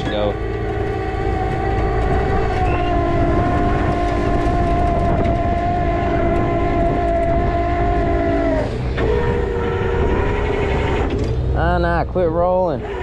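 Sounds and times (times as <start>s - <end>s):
hydraulic winch whining: 0.0s - 11.8s.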